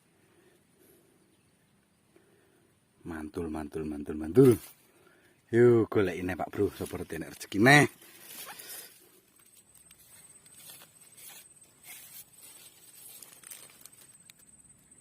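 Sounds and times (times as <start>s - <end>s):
faint rustling: 6.6s - 14.9s.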